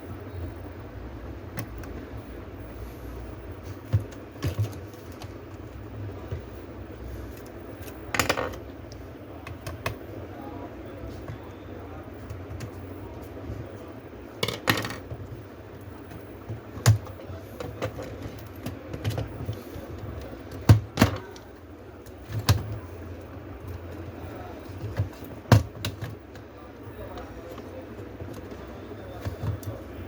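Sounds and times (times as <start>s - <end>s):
steady low hum: 0.0s - 30.0s
laptop parts clicking and knocking: 7.4s - 8.7s, 9.4s - 10.1s, 24.8s - 26.5s.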